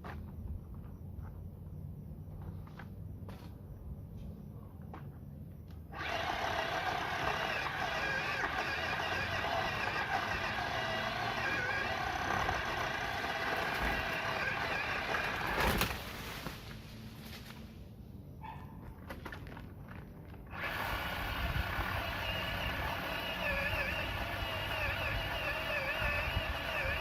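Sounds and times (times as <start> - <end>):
pole saw motor and chain whining: 5.9 - 15.9, 20.4 - 27.0.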